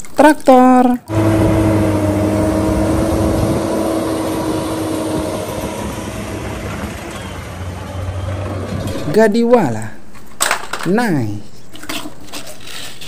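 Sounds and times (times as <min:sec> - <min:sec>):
engine running with low hum: 0:01.1 - 0:09.2.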